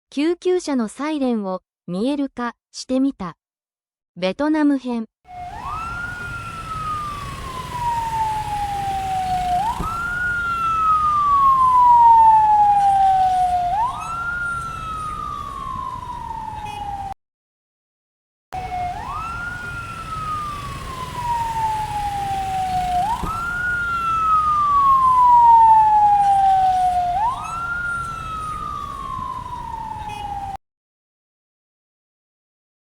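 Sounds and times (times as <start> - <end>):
ambulance siren: 5.3 - 17.2, 18.6 - 30.6
low traffic rumble: 5.3 - 17.2, 18.6 - 30.6.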